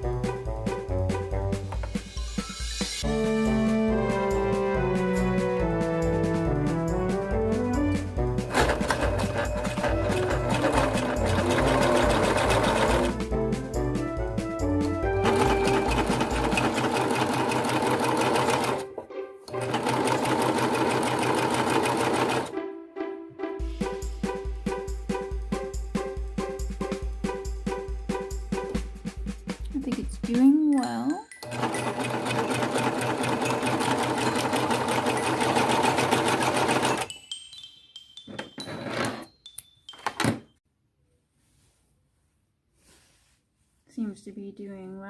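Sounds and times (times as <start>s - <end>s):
overlock sewing machine running: 8.5s - 13.2s, 15.2s - 18.9s, 19.5s - 22.5s, 31.4s - 37.1s
serger stitching fast: 8.5s - 13.2s, 15.2s - 18.9s, 19.5s - 22.5s.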